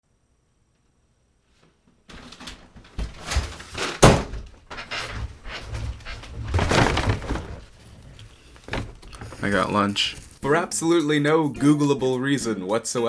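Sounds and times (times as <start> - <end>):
thuds and knocks: 3.0 - 10.4
rustling: 4.7 - 10.7.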